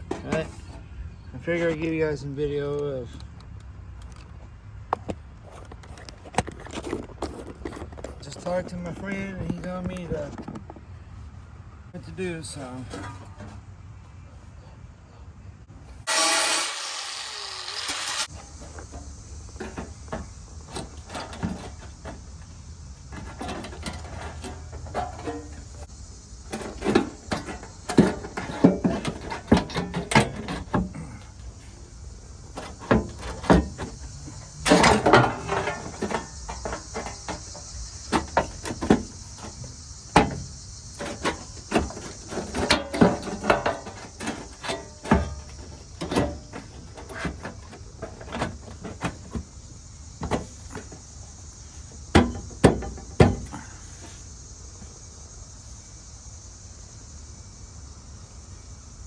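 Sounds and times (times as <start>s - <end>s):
metal scrape: 15.9s - 49.5s
crickets chirping: 18.2s - 59.0s
sheet metal knocks and clatter: 26.5s - 31.2s, 32.6s - 49.5s, 52.1s - 53.6s.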